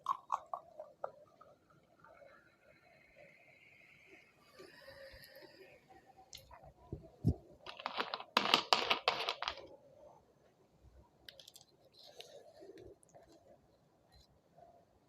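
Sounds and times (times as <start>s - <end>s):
plastic bottle crinkling: 7.7s - 9.7s.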